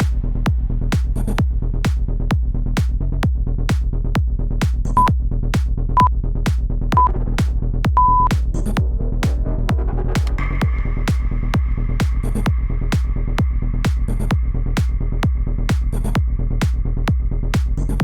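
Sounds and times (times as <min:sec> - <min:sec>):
interval timer beeps: 0:08.0 - 0:08.3.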